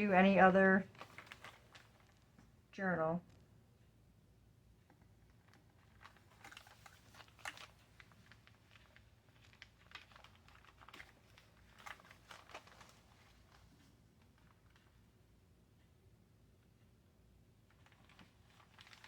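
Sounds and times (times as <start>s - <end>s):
paper rustling: 0.9s - 2.3s, 5.3s - 14.9s, 17.8s - 19.0s.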